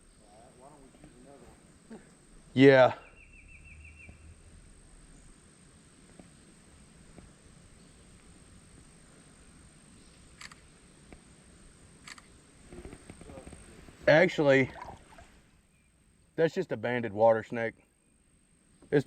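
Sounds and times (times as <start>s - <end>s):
low hiss: 0.0s - 19.0s
sharp click: 10.4s - 10.7s.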